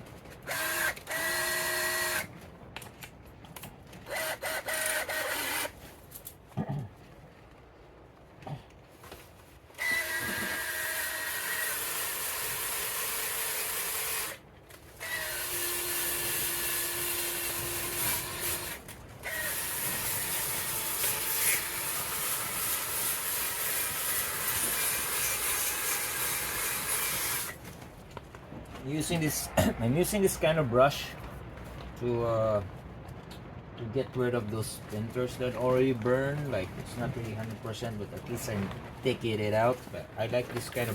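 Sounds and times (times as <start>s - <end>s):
power tool brush scrubbing wood: 15.6s - 27.6s.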